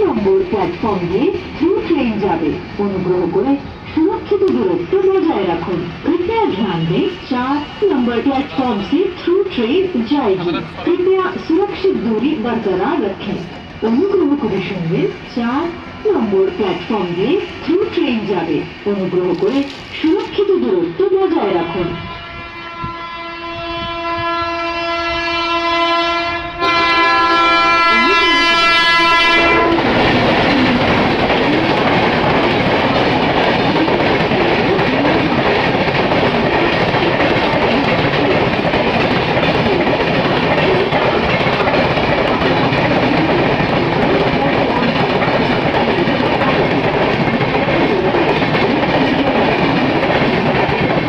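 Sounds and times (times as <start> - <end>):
passing train clickety-clack: 0.0 - 51.0
train horn blast: 21.4 - 30.0.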